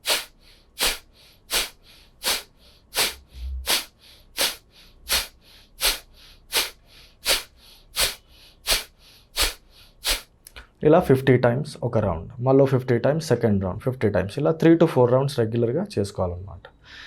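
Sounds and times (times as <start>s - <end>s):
forceful exhalations through nose: 0.0s - 10.4s
quiet in-breaths: 0.2s - 10.7s, 16.8s - 17.0s.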